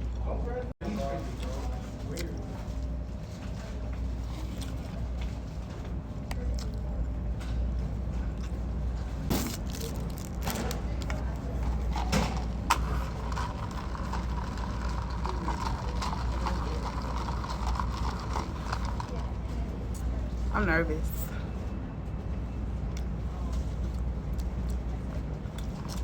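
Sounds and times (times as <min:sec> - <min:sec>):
eating sounds: 0:11.1 - 0:20.2.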